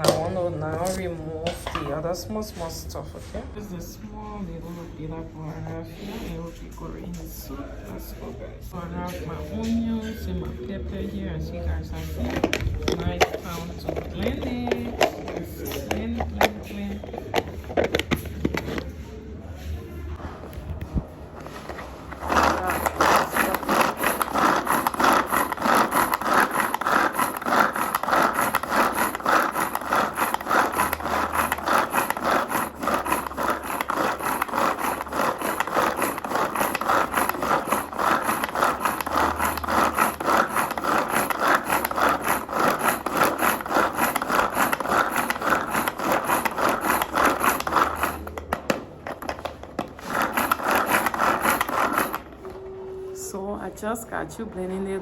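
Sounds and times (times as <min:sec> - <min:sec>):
onions and pepper being ground: 0:21.3 - 0:52.4.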